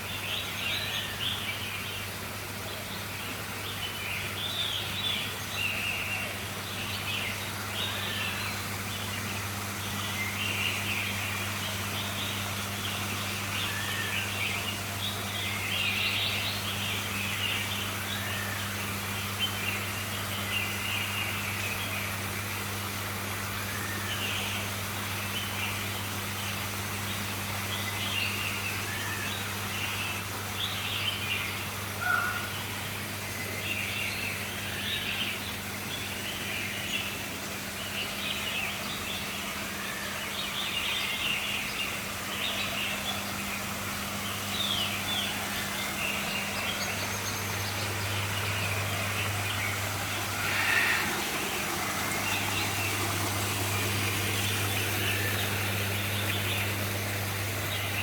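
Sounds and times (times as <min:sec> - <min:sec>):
caged birds chirping: 0:00.0 - 0:58.0
steady low hum: 0:40.6 - 0:58.0.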